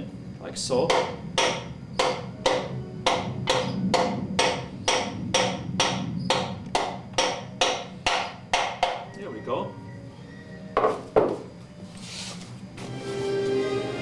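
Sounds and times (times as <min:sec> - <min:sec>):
hammer tapping metal: 0:00.8 - 0:09.1.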